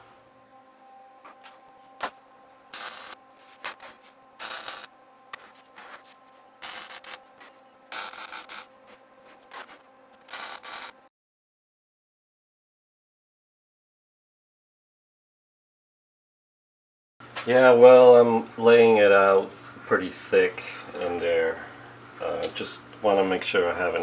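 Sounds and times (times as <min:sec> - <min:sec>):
faint steady hum: 0:00.0 - 0:11.0
welder crackling bursts: 0:02.7 - 0:03.2, 0:04.4 - 0:04.9, 0:06.6 - 0:07.2, 0:07.9 - 0:08.7, 0:10.2 - 0:11.1.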